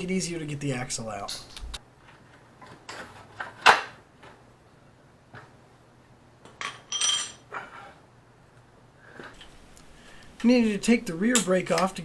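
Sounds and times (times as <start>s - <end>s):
metal parts clinking: 6.6s - 7.5s.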